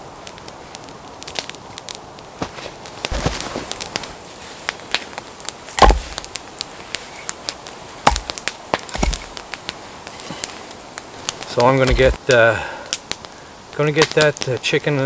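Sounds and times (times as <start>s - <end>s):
campfire crackling and popping: 0.0s - 15.0s
wooden knocks: 11.8s - 12.2s.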